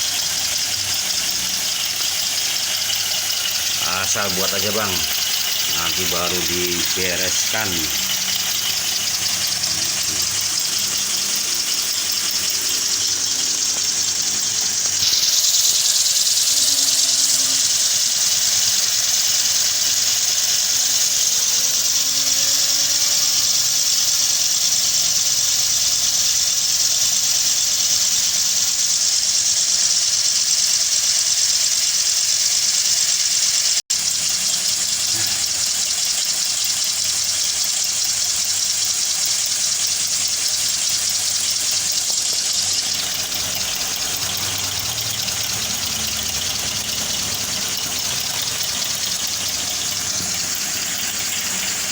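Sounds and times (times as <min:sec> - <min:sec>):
model steam engine hissing: 0:00.0 - 0:51.9.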